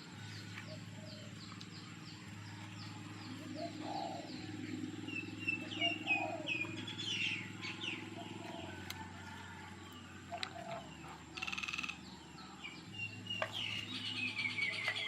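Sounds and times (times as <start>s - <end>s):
birds chirping: 0.0s - 15.0s
buzzy rattling bird call: 11.3s - 12.0s.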